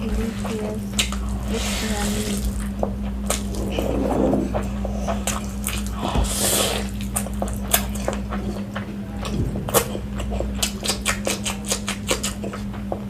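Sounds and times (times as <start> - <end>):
wet chewing and lip smacking: 6.9 - 13.0.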